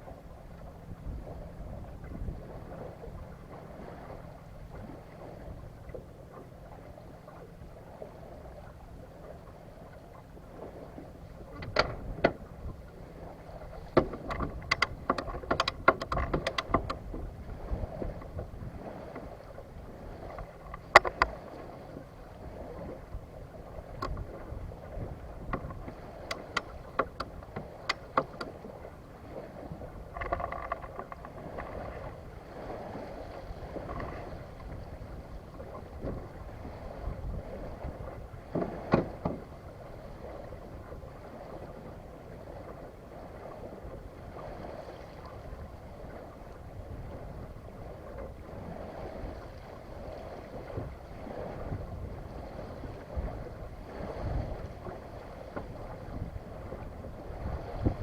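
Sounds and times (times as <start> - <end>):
wind noise: 0.8 - 5.9, 11.5 - 21.6, 22.4 - 28.4, 29.3 - 39.5, 43.4 - 58.0
sharp clicks and knocks: 11.6 - 12.4, 14.0 - 17.0, 20.6 - 21.3, 25.5 - 28.5, 30.2 - 31.8.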